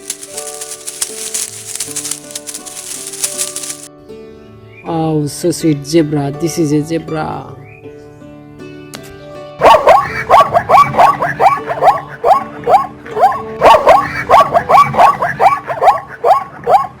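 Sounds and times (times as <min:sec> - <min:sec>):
zebra barking yelps: 0:09.6 - 0:17.0.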